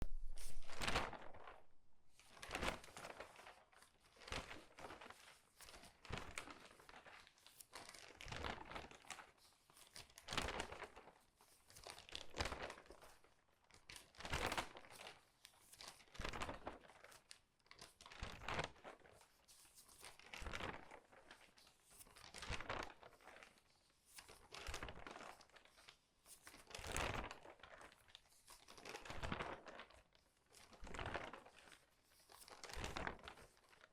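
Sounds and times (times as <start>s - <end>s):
paper rustling: 0.0s - 13.3s, 30.6s - 33.9s
newspaper pages turning: 0.1s - 8.0s.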